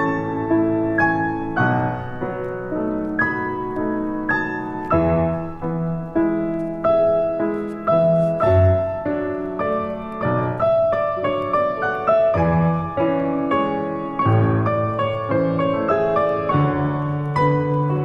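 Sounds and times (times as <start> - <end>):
slow gentle piano music: 0.0 - 18.0.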